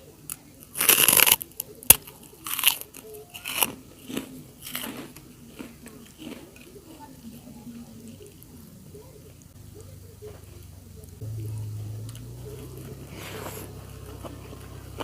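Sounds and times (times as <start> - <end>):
crunchy bites into crackers: 0.3 - 7.2
chewing: 0.3 - 11.2, 12.0 - 15.0.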